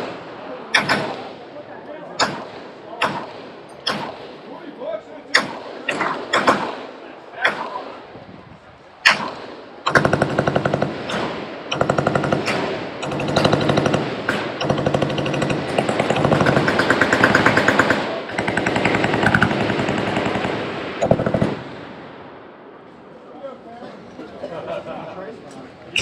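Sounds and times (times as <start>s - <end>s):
machine-gun fire: 2.2s - 4.4s, 5.4s - 8.0s, 9.0s - 21.9s.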